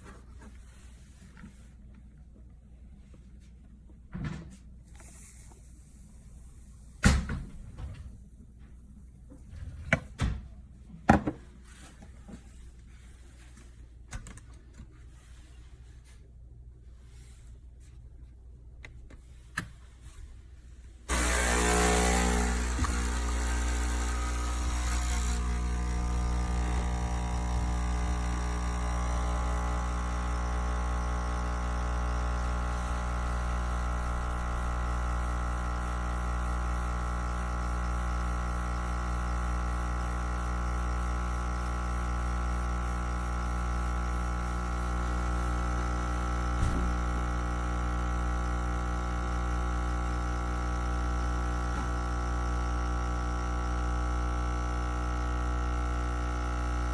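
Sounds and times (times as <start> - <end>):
coffee machine pump hum: 4.2 - 10.3, 21.0 - 56.9.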